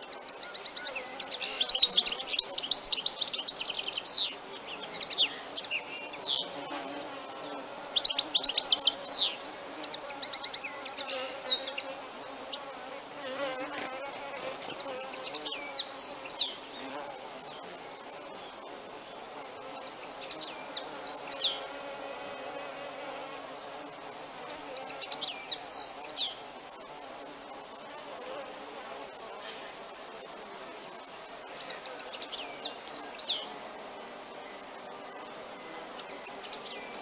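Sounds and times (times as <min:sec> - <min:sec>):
songbird calling: 0:00.0 - 0:21.8, 0:24.4 - 0:26.4, 0:31.5 - 0:33.6, 0:35.6 - 0:37.0.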